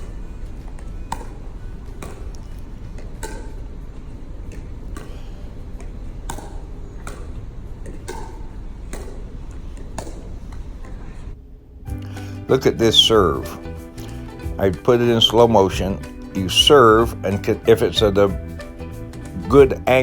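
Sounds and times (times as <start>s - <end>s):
paddles striking plastic ball: 0.0s - 10.7s.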